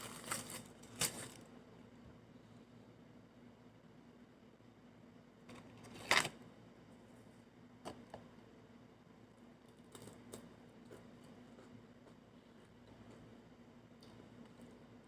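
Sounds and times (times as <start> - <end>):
eating and food handling: 0.0 - 1.5, 9.4 - 15.0.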